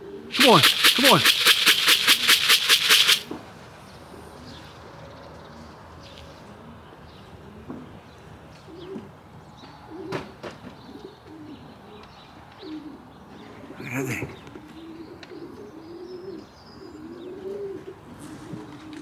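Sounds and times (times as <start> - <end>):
sharp clicks: 0.3 - 3.3.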